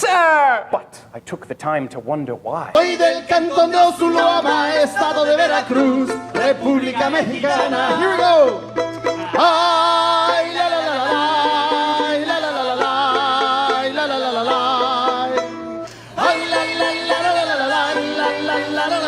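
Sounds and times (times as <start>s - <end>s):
person singing long wavering notes: 4.0s - 19.0s
plucked and strummed strings: 4.1s - 19.0s.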